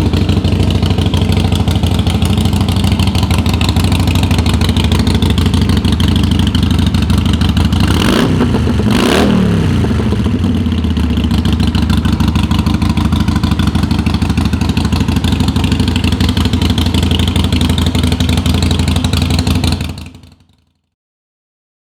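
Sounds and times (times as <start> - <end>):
motorcycle engine revving: 0.0 - 20.4
motorcycle engine idling: 0.0 - 20.8.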